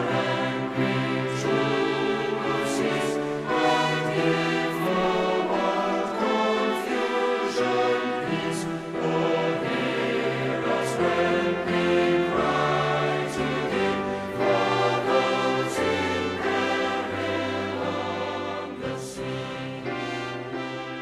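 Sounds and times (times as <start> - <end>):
choir singing sustained chords: 0.0 - 21.0
orchestral music: 0.0 - 21.0.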